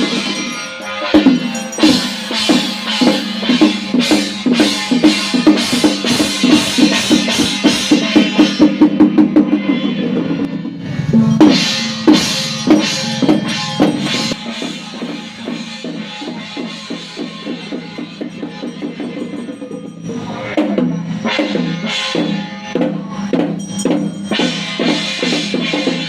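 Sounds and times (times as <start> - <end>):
drums and cymbals beating: 0.0 - 26.0.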